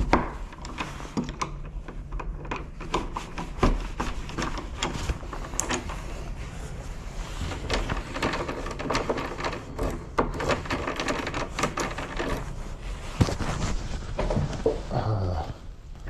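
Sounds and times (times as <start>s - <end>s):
lock hardware clicking and rattling: 7.6s - 12.8s.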